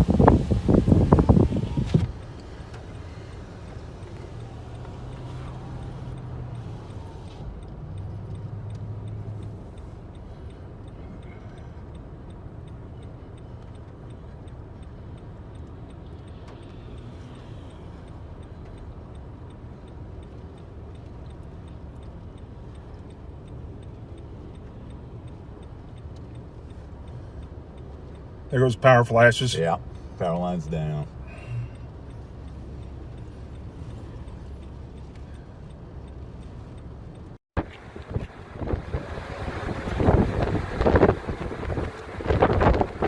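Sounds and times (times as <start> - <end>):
wind gust buffeting vehicle: 0.0 - 11.2, 30.8 - 43.0
low rumble inside vehicle: 0.0 - 43.0
faint ticking: 2.1 - 37.4.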